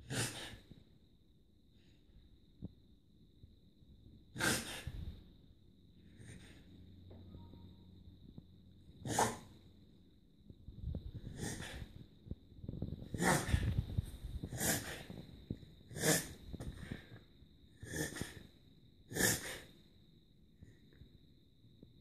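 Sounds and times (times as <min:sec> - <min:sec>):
dog reverse sneezing: 0:04.4 - 0:05.0, 0:09.0 - 0:09.4, 0:13.2 - 0:13.7.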